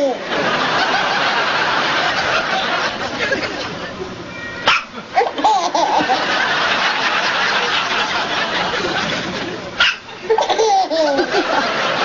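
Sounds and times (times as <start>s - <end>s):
baby voice: 0.0s - 0.2s
baby hiccup: 4.6s - 4.9s
breathy laughing: 10.2s - 12.0s.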